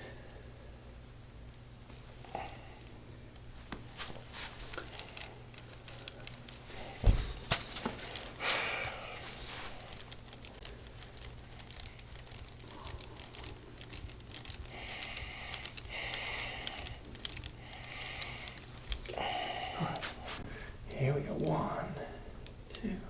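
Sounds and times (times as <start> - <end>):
rapid light clicks and crinkling: 0.2 - 23.0.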